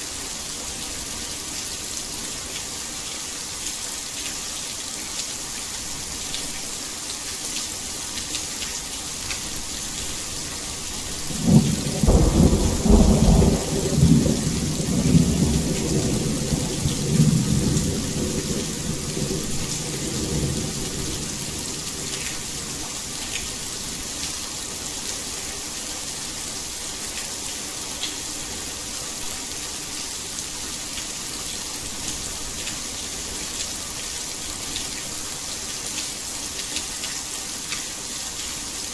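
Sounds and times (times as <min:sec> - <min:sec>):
heavy rain: 0:00.0 - 0:38.9
thunder rumbling: 0:11.3 - 0:22.3.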